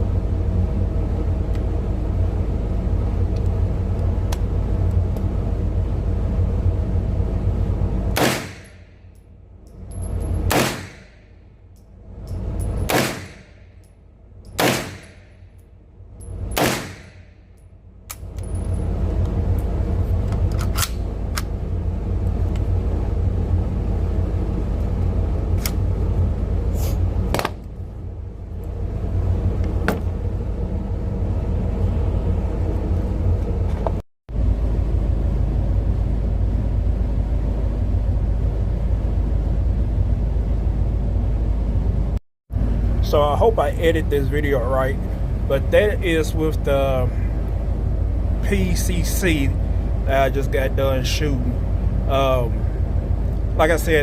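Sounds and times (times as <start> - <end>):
low steady rumble: 0.0 - 54.0
gunshots: 8.2 - 8.7, 10.5 - 11.1, 12.9 - 13.5, 14.6 - 15.2, 16.6 - 17.1.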